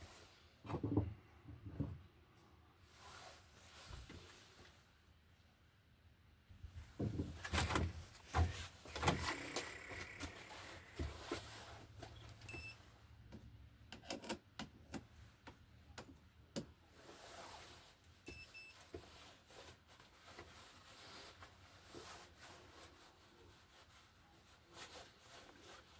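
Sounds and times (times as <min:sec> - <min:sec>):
handling clicks and rustling: 0:06.9 - 0:12.7
faint electronic double beep: 0:12.5 - 0:12.8, 0:18.3 - 0:18.8.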